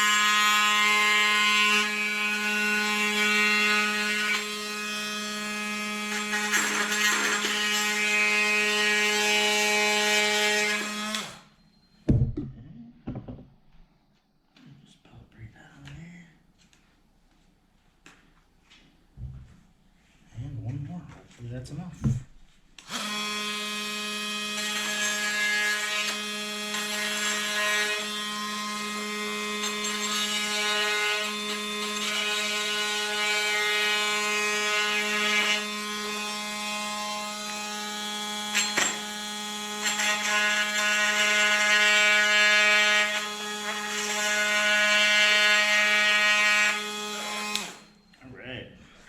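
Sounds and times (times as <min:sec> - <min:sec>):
oscillating multi-tool buzzing: 0:22.8 - 0:48.2.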